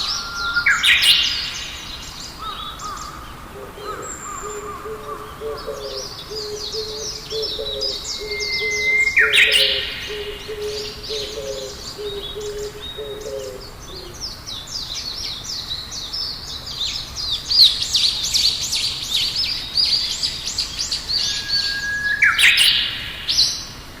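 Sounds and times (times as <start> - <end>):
birds chirping and trilling: 0.0 - 24.0
low repeated hoots: 3.5 - 14.2.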